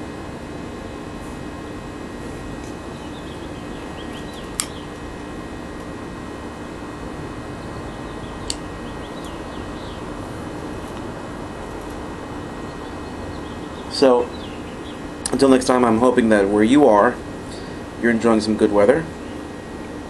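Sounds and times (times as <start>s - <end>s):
generator humming: 0.0s - 20.0s
sharp clicks: 4.2s - 4.8s.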